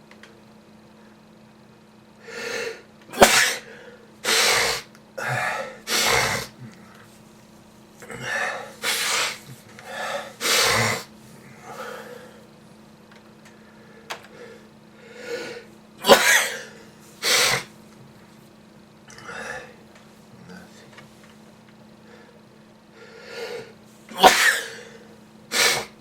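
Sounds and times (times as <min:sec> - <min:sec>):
person sneezing: 0:02.3 - 0:06.9, 0:08.0 - 0:12.3, 0:15.2 - 0:17.7, 0:23.2 - 0:26.0.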